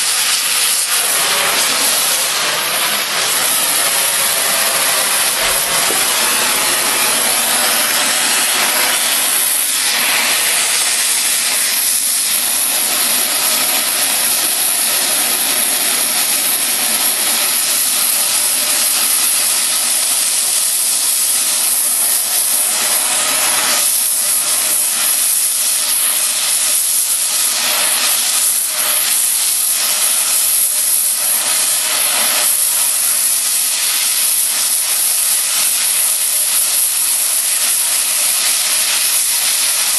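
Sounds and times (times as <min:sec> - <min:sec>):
cutting torch hissing: 0:00.0 - 0:39.9.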